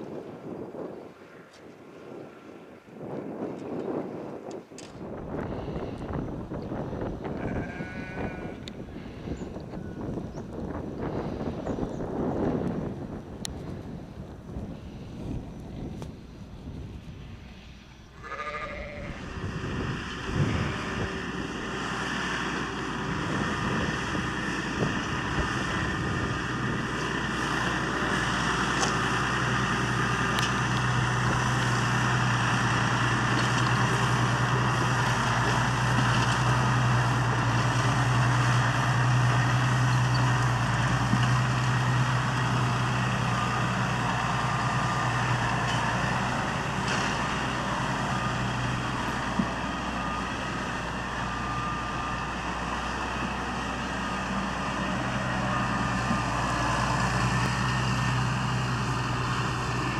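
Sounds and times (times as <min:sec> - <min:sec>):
tractor diesel engine droning: 0:00.0 - 0:59.9.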